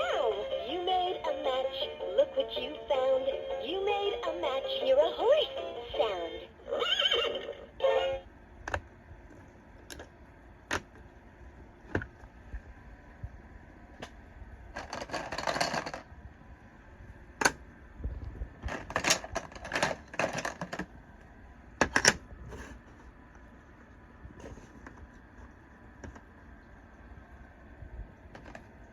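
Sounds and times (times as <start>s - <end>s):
rustling and rattling: 14.7s - 16.1s, 18.5s - 21.0s.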